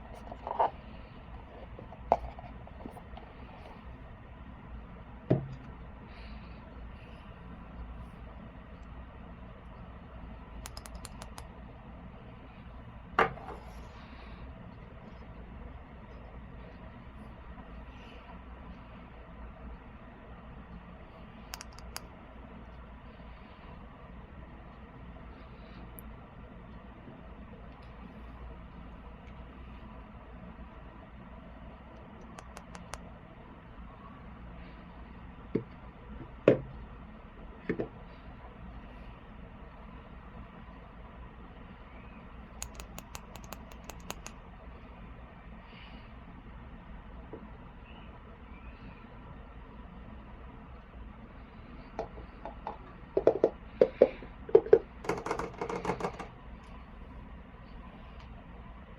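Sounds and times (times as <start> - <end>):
steady low hum: 0.0 - 58.9
light clicks: 10.6 - 11.5, 21.5 - 22.1, 32.0 - 33.1, 42.6 - 44.4
toy figures knocking and clicking: 42.6 - 44.4, 52.0 - 56.3.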